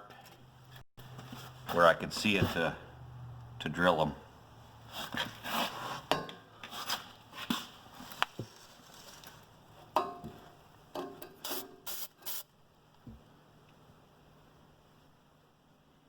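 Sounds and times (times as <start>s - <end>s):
spray-paint can hissing: 11.5s - 12.5s.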